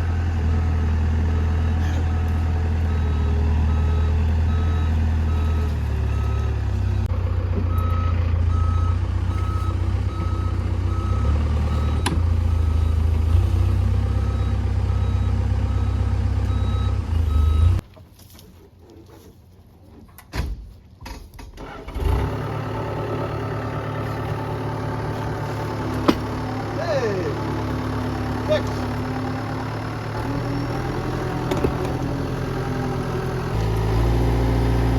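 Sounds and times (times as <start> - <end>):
diesel engine running: 0.0 - 17.8, 21.6 - 34.9.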